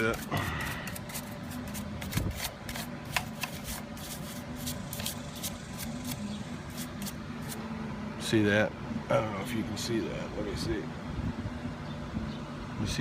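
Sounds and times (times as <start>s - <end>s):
hand brush scrubbing: 0.0s - 7.6s.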